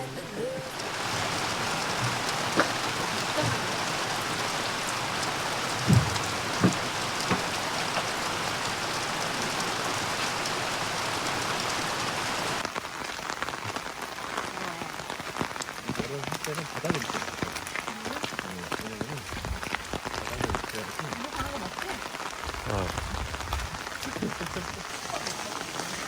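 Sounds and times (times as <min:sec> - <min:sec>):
steady rain hiss: 0:00.0 - 0:26.0
short knocks: 0:05.7 - 0:08.1.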